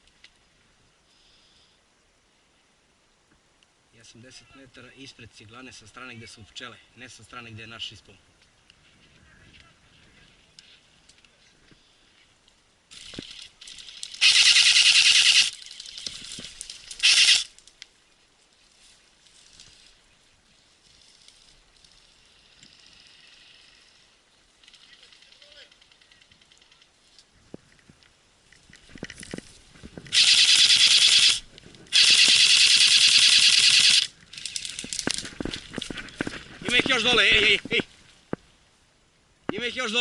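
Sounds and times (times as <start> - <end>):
airsoft gun firing bursts: 14.2 - 15.5, 17.0 - 17.5, 30.1 - 34.1.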